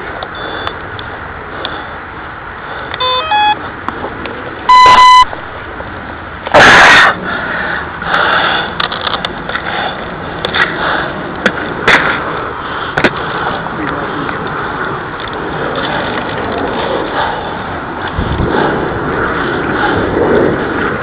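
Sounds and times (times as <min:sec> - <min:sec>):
rush of noise: 0:00.0 - 0:21.0
electronic beeps: 0:03.0 - 0:03.6, 0:04.7 - 0:05.4.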